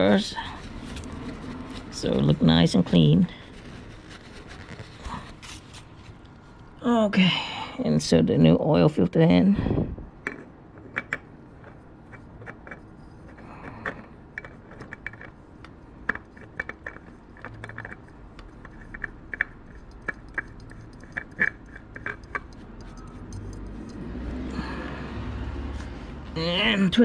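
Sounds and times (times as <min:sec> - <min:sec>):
oil filter clicking and scraping: 0:00.0 - 0:06.5, 0:10.2 - 0:24.5.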